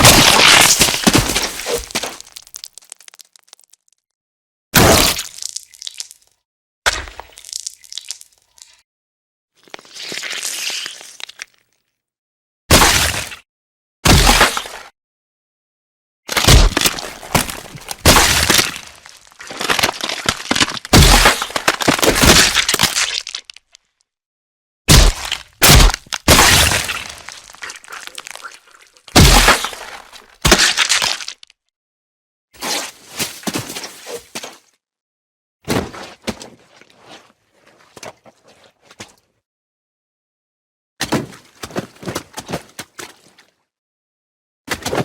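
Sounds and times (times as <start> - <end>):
cartoon smashing impacts: 0.0 - 3.4, 16.3 - 23.2, 24.9 - 30.9
glass cracking and breaking: 0.0 - 4.0, 16.4 - 23.7, 24.9 - 31.5.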